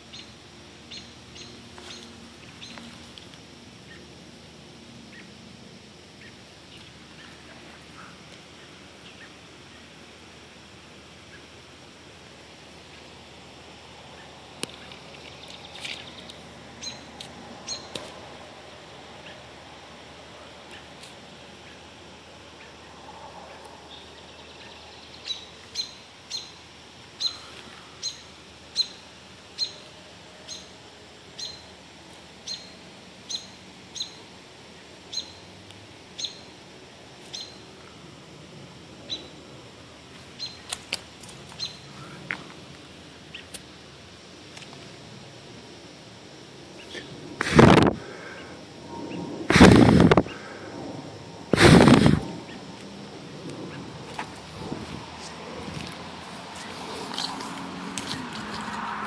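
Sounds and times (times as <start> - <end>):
small bird chirping: 0.1 - 4.1, 14.1 - 18.0, 23.5 - 26.6, 27.2 - 30.8, 31.4 - 31.7, 32.4 - 34.2, 34.8 - 35.5, 36.2 - 36.5, 37.2 - 37.7, 39.0 - 39.4, 40.4 - 40.8, 41.5 - 42.1.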